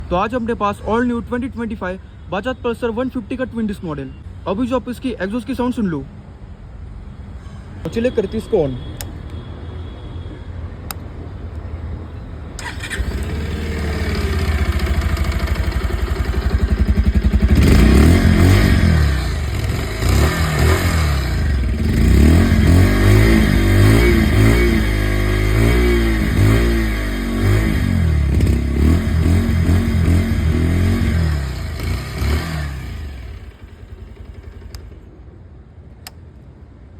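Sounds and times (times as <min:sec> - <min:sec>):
motorcycle engine revving: 0:12.5 - 0:35.1.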